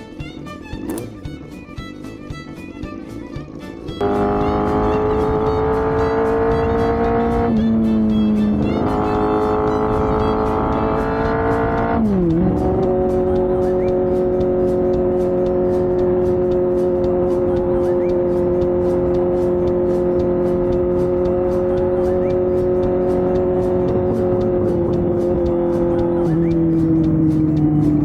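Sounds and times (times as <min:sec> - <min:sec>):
engine at high revs: 0:04.0 - 0:28.0.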